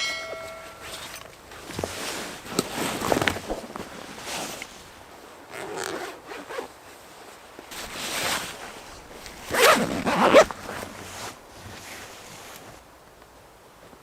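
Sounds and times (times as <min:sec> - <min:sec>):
zipper being pulled: 0:05.5 - 0:06.7, 0:07.7 - 0:12.2.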